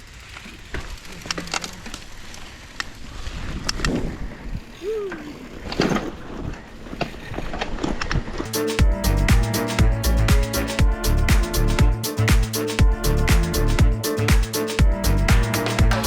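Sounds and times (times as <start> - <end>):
bike chain and frame rattling: 0.0 - 3.6.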